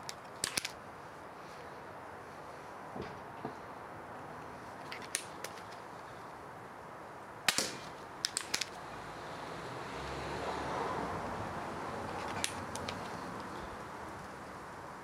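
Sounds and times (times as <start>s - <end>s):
air pistol crack: 7.5s - 8.8s.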